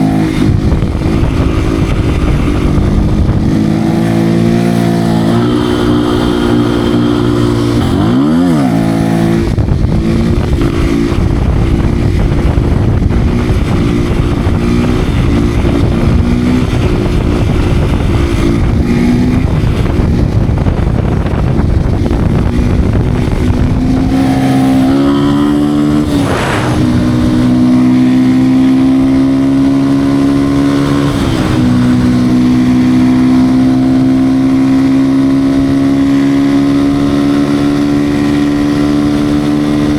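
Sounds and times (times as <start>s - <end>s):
motorcycle engine running: 0.0s - 39.9s
loud rushing noise: 21.6s - 29.2s.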